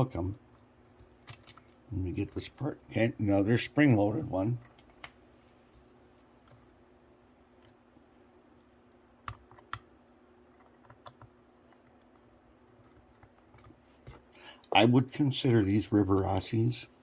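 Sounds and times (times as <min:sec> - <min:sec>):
faint steady hum: 0:00.0 - 0:17.0
small metal parts clicking: 0:01.2 - 0:01.9.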